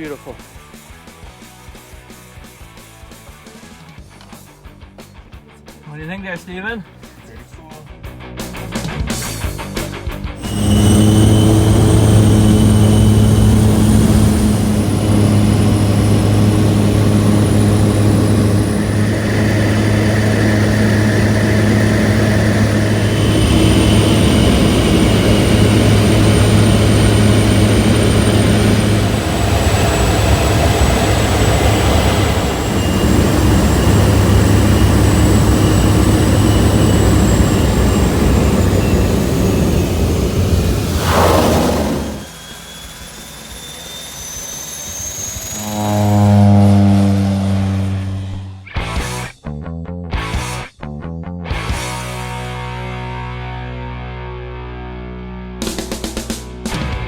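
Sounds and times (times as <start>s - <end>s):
propeller airplane engine drone: 5.9s - 49.3s, 55.6s - 57.0s
thin high whine: 10.4s - 48.7s.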